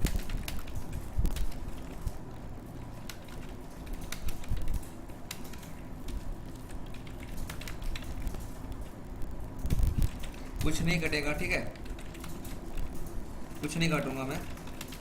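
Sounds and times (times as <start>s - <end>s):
keyboard typing clicks: 0.0s - 2.2s, 2.9s - 9.0s, 11.8s - 15.0s.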